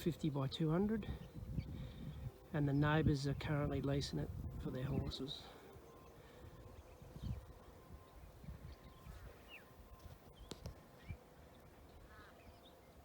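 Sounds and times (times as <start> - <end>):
bird chirps: 5.2 - 13.0.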